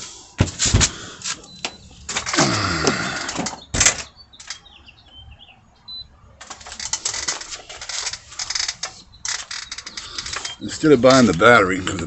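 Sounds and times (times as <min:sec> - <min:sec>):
rapid rattling and clicking: 0:06.4 - 0:12.0.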